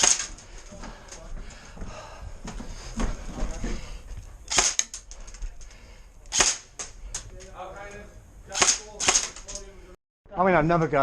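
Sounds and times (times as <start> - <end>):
airsoft gun shots: 0.0 - 0.3, 4.5 - 4.9, 6.3 - 6.8, 8.5 - 9.4.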